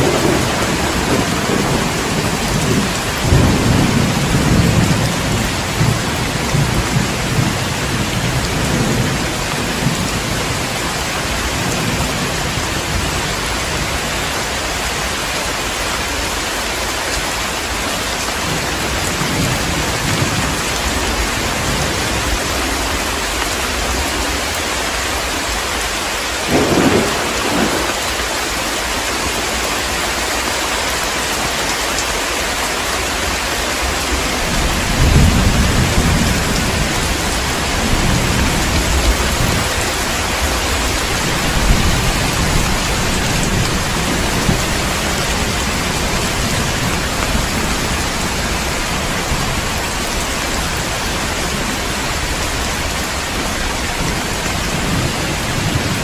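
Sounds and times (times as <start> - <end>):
thunder rumbling: 0.0 - 15.0, 26.4 - 29.0, 33.2 - 56.0
heavy rain falling: 0.0 - 56.0
sharp thunder crack: 26.5 - 28.1.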